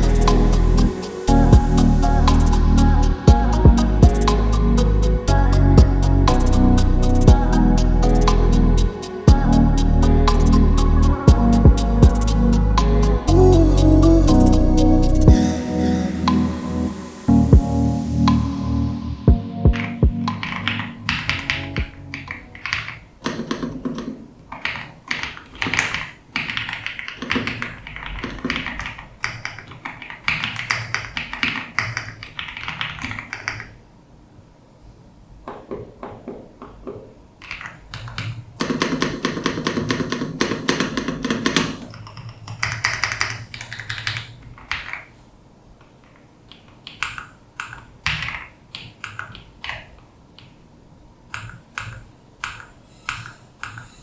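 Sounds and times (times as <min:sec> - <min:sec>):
mechanical keyboard typing: 0:19.7 - 0:33.8, 0:37.4 - 0:45.1, 0:46.5 - 0:50.6, 0:51.3 - 0:53.9.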